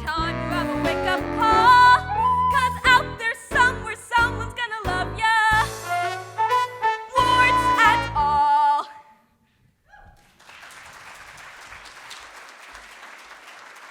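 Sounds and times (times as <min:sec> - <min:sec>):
musical song with accompaniment: 0:00.0 - 0:09.3
audience applauding: 0:10.2 - 0:13.9.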